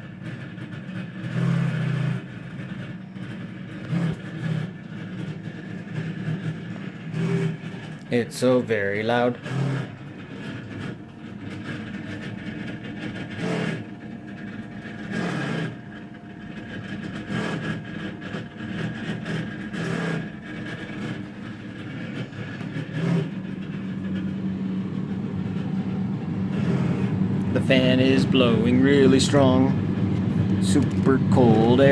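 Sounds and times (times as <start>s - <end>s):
refrigerator fan humming: 0.0s - 31.9s
high whine: 23.3s - 31.9s.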